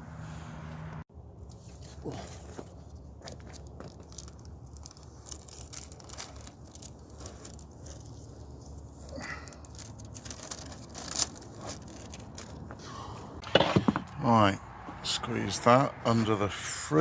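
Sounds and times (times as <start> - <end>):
tearing noise: 3.3 - 12.7.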